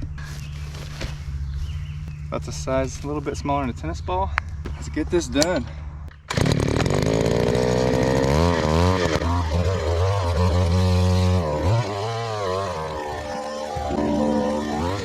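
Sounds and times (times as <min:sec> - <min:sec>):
auger engine boring into soil: 0:06.3 - 0:15.0.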